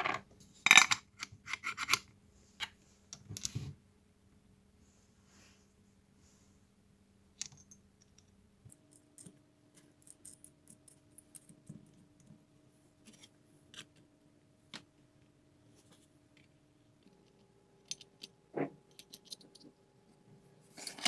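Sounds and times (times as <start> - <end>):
small parts clicking and tapping: 7.4 - 12.4, 15.8 - 19.8.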